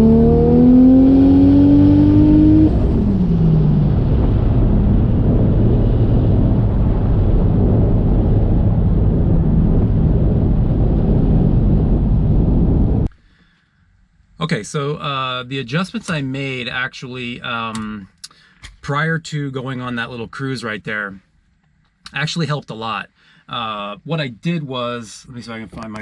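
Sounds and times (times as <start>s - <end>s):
car engine accelerating: 0.0s - 13.1s.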